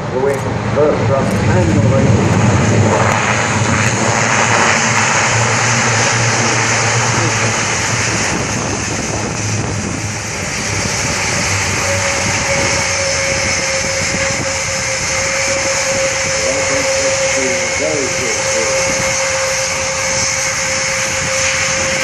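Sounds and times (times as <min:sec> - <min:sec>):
steady high whine: 0:00.0 - 0:22.0
turboprop engines rushing: 0:00.0 - 0:22.0.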